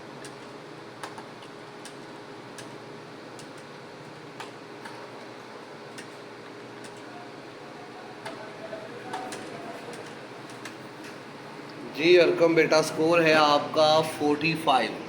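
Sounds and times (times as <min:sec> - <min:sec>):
steady background hum: 0:00.0 - 0:15.0
keyboard typing clicks: 0:09.0 - 0:10.8.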